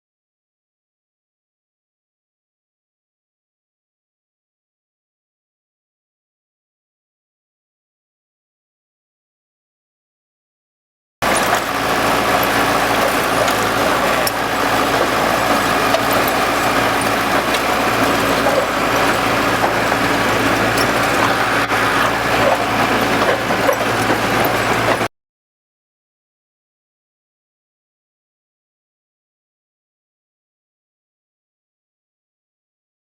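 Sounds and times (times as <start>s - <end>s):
large vehicle engine humming: 11.2s - 25.1s.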